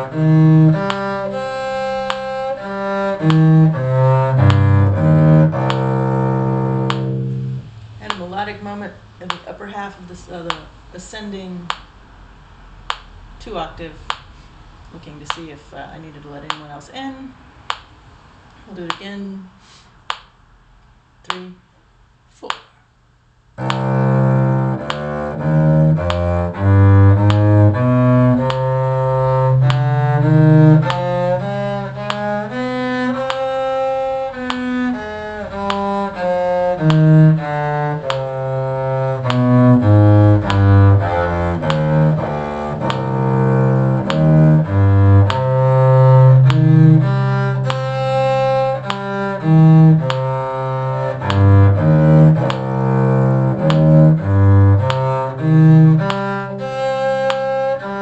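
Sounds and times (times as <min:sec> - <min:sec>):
cello playing a scale: 0:00.0 - 0:08.8, 0:23.6 - 0:58.0.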